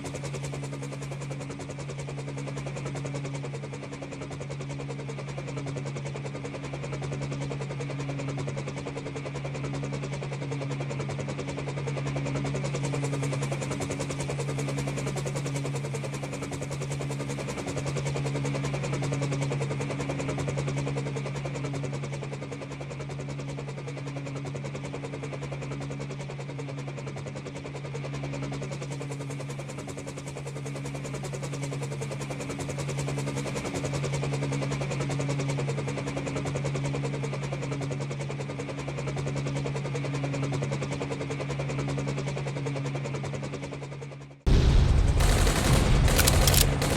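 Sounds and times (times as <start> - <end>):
helicopter drone and chop: 44.5 - 46.9.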